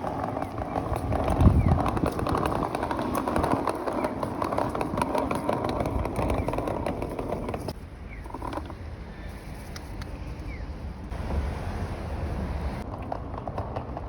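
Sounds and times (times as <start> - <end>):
traffic noise: 0.0 - 14.0.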